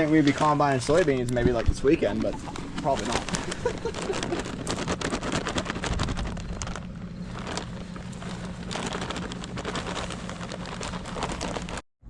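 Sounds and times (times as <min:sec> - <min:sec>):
engine running: 0:00.0 - 0:11.8.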